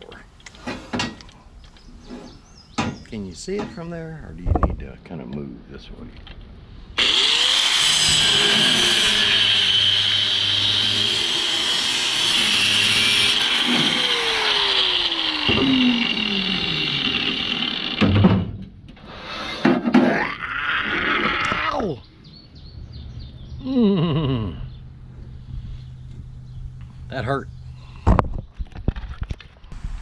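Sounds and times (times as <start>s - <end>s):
power tool cutting metal pipe: 7.0s - 18.4s.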